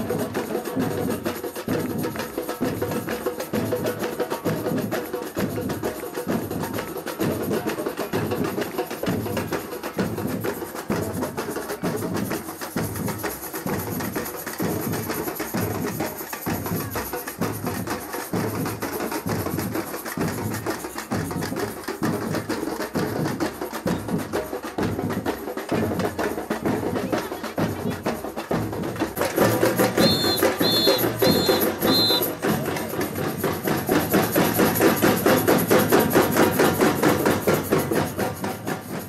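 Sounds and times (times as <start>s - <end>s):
samba percussion group drumming: 0.0s - 39.0s
short high whistle blasts: 30.0s - 32.4s.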